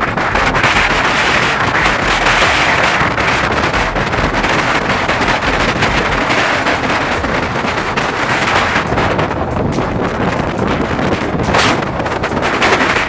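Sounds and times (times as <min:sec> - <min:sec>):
low thumps: 0:00.0 - 0:13.0
wind buffeting microphone: 0:00.0 - 0:13.0.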